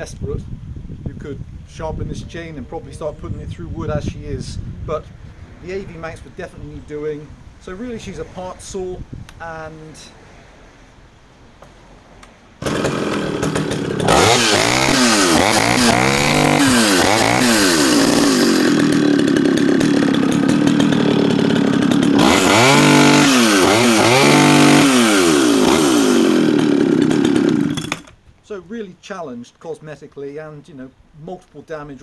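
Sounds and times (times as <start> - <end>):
chainsaw engine revving: 12.6 - 28.2.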